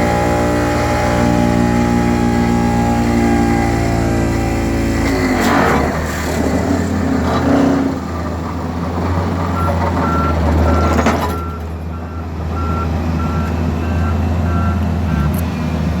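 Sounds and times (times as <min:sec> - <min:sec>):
excavator pile driver drone: 0:00.0 - 0:16.0
machine warning alarm beeps: 0:09.6 - 0:15.3.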